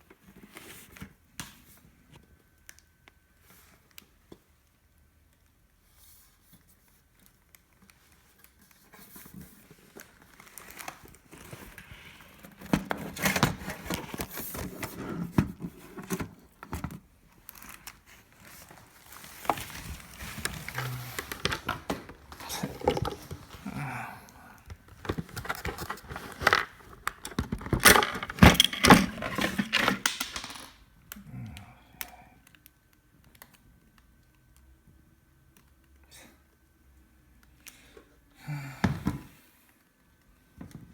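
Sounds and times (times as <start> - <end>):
packaging crinkling and tearing: 9.5 - 15.0, 17.3 - 23.8, 24.8 - 30.8.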